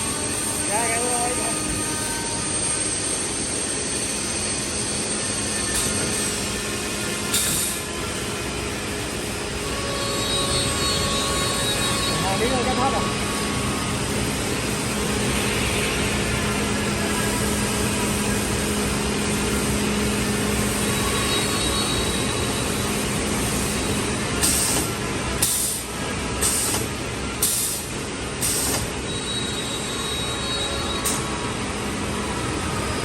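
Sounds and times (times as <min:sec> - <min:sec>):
short sharp pneumatic hisses: 0:07.3 - 0:07.8, 0:24.4 - 0:25.8, 0:26.4 - 0:28.9.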